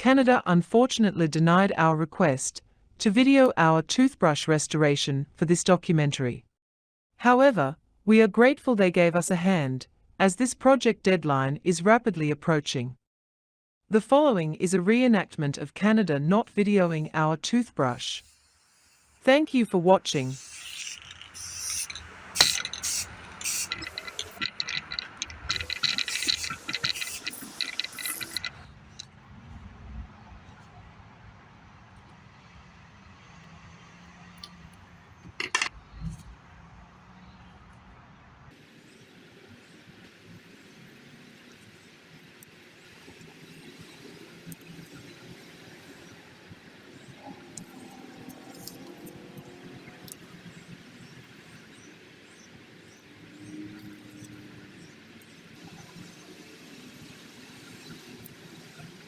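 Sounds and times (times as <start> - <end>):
rapid rattling clicks: 16.5 - 17.1, 20.1 - 29.1
low rumble of distant traffic: 20.4 - 42.9.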